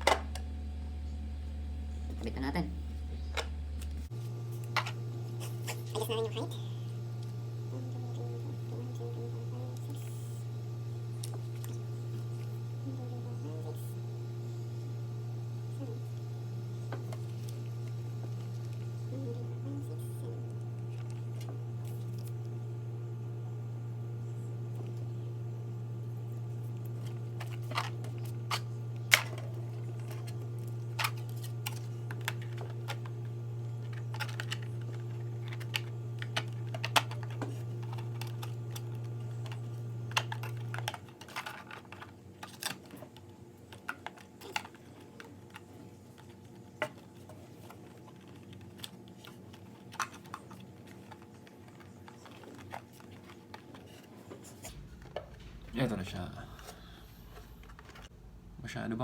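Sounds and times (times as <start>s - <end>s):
low hum: 49.9s - 59.0s.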